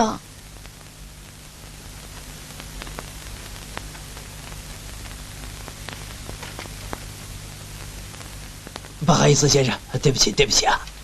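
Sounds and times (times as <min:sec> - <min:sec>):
steady hiss: 0:00.0 - 0:11.0
faint clicks: 0:02.1 - 0:09.0.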